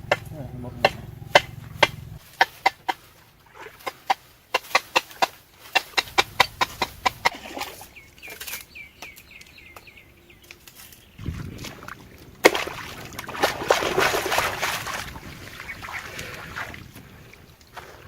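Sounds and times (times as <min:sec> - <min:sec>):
bird chirping: 0:00.0 - 0:03.1, 0:03.9 - 0:11.4
water sloshing and splashing: 0:00.0 - 0:18.0.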